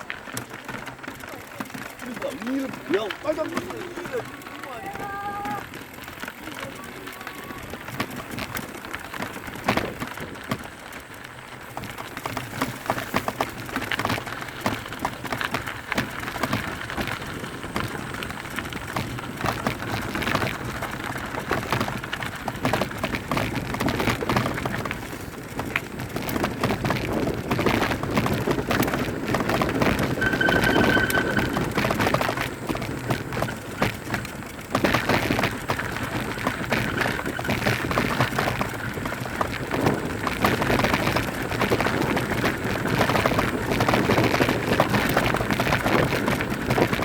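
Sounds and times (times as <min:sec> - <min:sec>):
bike rattling and clicking: 0:00.0 - 0:47.0
bike tyres rolling over dirt: 0:00.0 - 0:47.0
short high squeal: 0:30.2 - 0:31.8.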